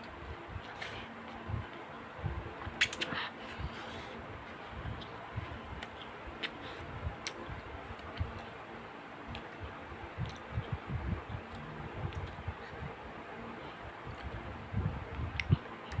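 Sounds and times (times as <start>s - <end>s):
faint steady hum: 0.0s - 16.0s
soft chewing: 2.6s - 8.6s, 9.2s - 10.8s, 13.6s - 14.4s.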